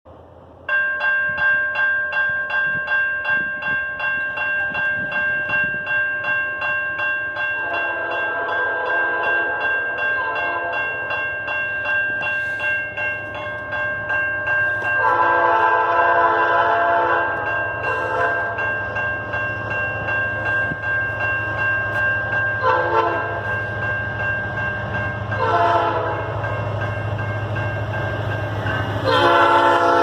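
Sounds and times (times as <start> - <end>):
locomotive air horns chord: 7.6 - 11.0, 14.6 - 18.6, 22.6 - 23.6, 25.4 - 26.3, 29.0 - 30.0
lower-pitched horn chord: 29.0 - 30.0.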